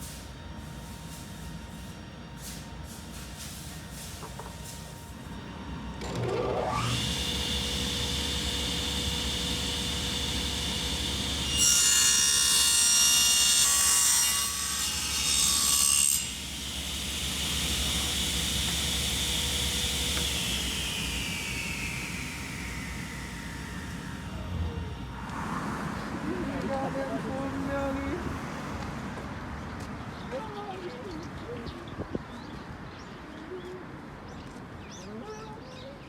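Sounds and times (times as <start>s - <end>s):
power saw cutting wood: 5.9s - 25.2s.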